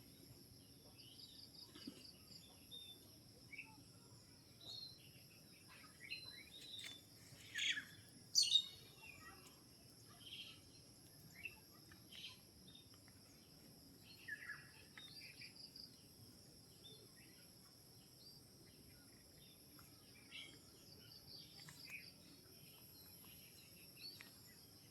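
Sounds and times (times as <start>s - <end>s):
wild birds chirping: 4.7s - 9.4s.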